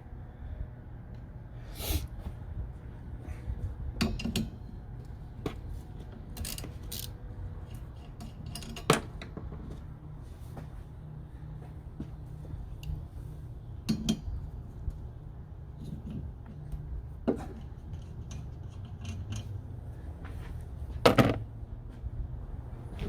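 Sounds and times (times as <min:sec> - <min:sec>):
tools and parts clinking: 0:06.3 - 0:09.2, 0:17.4 - 0:19.6.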